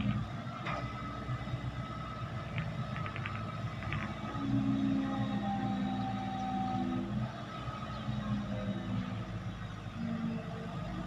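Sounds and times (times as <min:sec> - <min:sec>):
heavy diesel engine running: 0:00.0 - 0:11.0.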